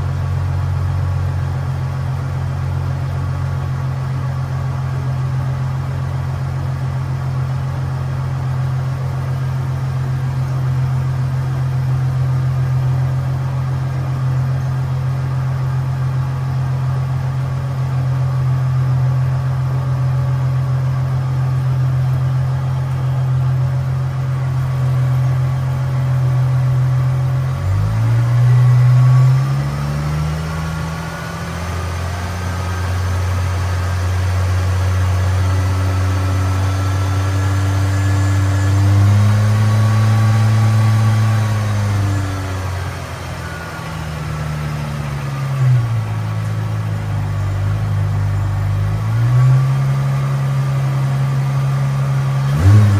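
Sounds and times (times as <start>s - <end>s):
car engine idling and revving: 0.0s - 52.9s.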